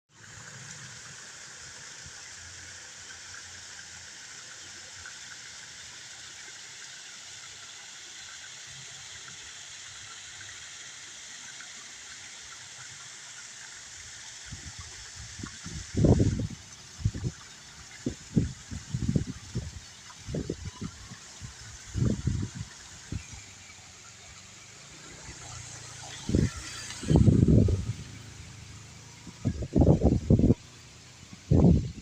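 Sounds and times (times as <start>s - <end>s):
wind buffeting microphone: 14.5s - 17.4s, 18.0s - 23.5s, 26.2s - 28.3s, 29.2s - 30.7s, 31.3s - 32.0s
waterfall rushing: 14.6s - 32.0s.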